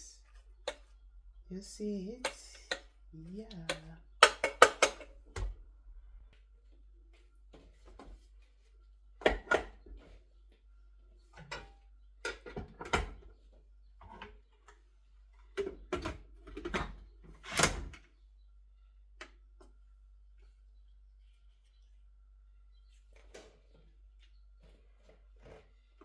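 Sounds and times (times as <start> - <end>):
plastic parts knocking and clacking: 3.6 - 5.6.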